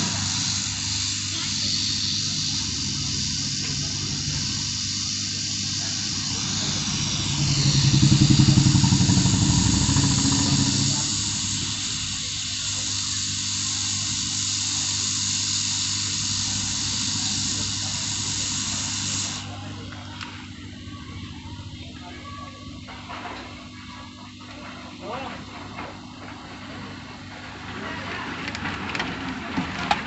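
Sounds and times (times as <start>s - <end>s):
hot air blower hissing: 0.0s - 20.2s
low rumble: 5.9s - 12.1s.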